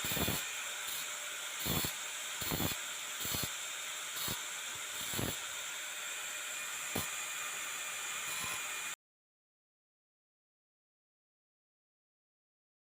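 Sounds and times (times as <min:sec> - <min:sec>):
power grinder grinding steel: 0:00.0 - 0:09.0.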